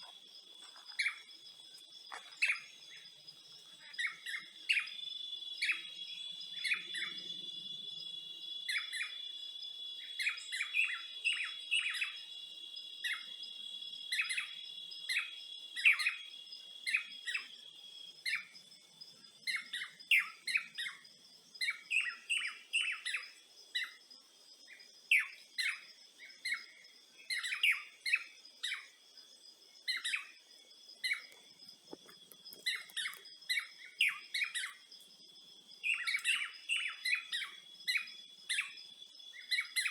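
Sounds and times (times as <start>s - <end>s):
birds chirping: 0.0s - 9.3s, 29.8s - 35.0s, 35.7s - 39.9s.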